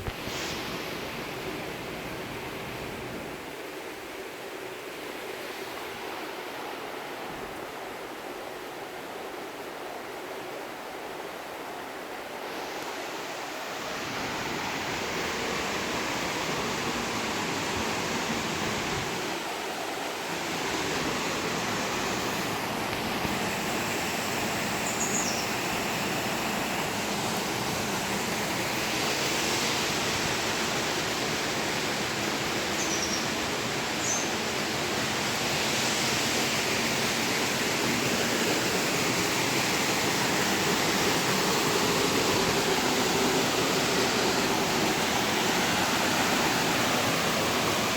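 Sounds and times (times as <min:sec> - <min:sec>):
waterfall rushing: 0:12.4 - 0:47.9.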